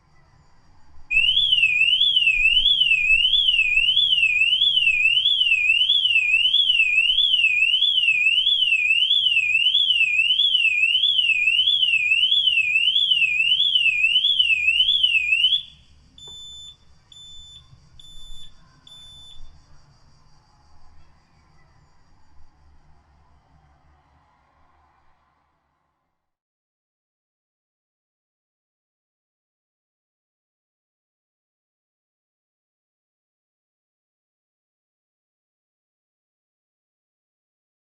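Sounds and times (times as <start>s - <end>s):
car alarm siren wailing: 1.1s - 15.8s
short beeps: 16.2s - 19.5s.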